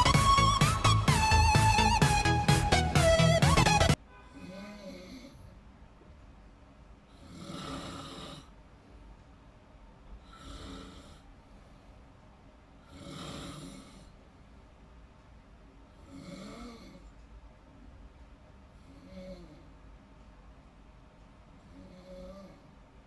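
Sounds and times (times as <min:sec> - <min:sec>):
loud music: 0:00.0 - 0:04.0
person snoring: 0:07.2 - 0:08.5, 0:10.2 - 0:11.2, 0:12.9 - 0:14.0, 0:16.0 - 0:17.0, 0:18.9 - 0:19.7, 0:21.7 - 0:22.6.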